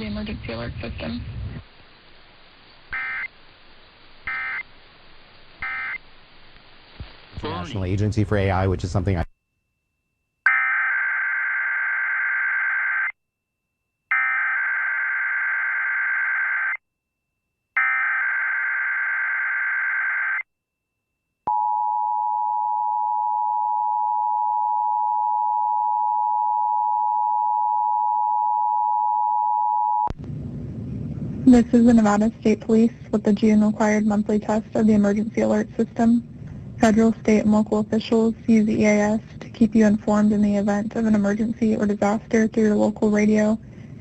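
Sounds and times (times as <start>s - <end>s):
warbling data tones: 2.9s - 3.3s, 4.2s - 4.7s, 5.6s - 6.0s.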